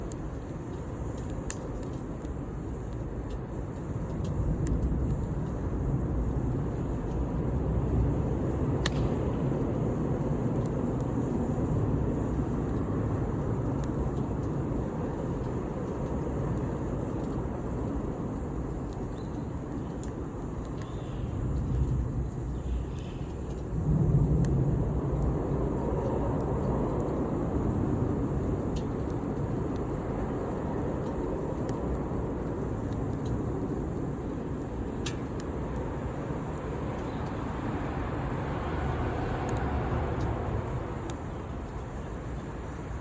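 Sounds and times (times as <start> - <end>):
campfire crackles and pops: 0.0 - 43.0
low steady rumble: 35.5 - 43.0.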